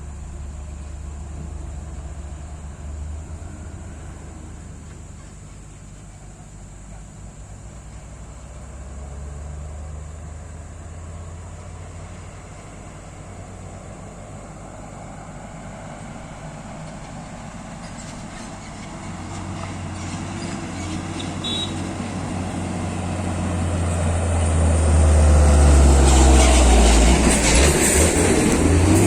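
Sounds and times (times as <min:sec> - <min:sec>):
diesel engine humming: 0:00.0 - 0:29.0
vehicle rattling and clattering: 0:16.2 - 0:29.0.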